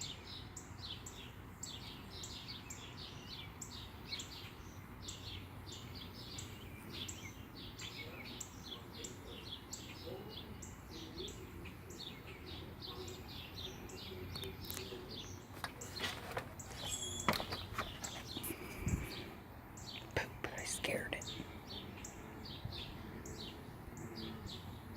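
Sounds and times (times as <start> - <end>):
bird chirping: 0.0 - 24.9
sharp clicks and rustles: 14.4 - 19.1.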